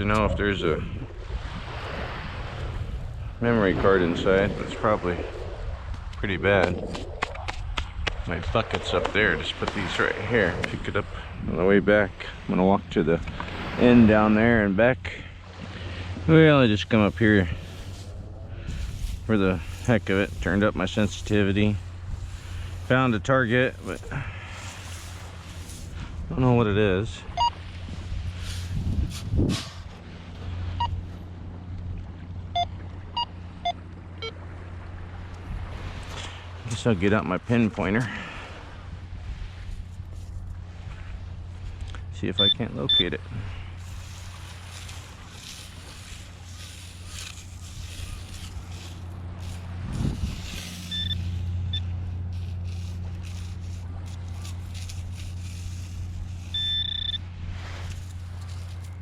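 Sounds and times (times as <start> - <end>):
surf: 0.0 - 59.0
wind: 0.0 - 59.0
steady low hum: 2.7 - 59.0
metal detector beeps: 27.3 - 27.6, 30.8 - 31.0, 32.5 - 34.4, 42.3 - 43.2, 50.5 - 52.0, 55.1 - 58.8.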